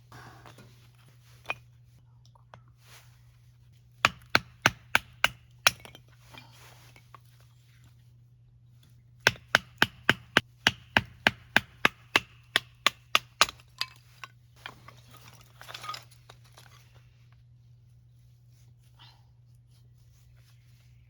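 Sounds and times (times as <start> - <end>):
chopping strikes on wood: 4.1 - 5.8, 9.3 - 13.6.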